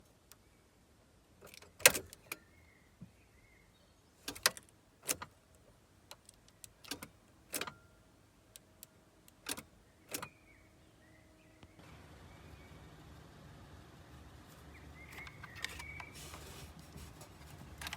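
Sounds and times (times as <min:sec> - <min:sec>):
low steady hum: 0:04.8 - 0:17.9.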